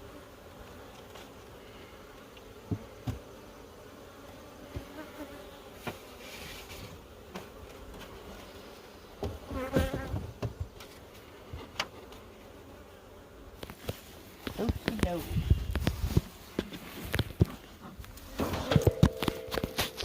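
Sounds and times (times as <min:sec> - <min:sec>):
honeybees buzzing: 0:00.0 - 0:20.0
knocks and scrapes: 0:15.8 - 0:20.0.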